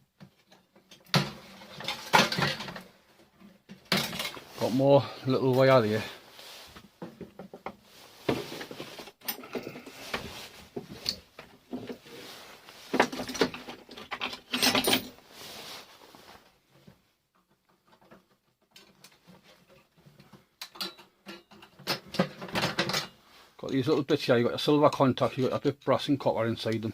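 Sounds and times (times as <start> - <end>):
small parts clicking and scraping: 8.5 - 15.6.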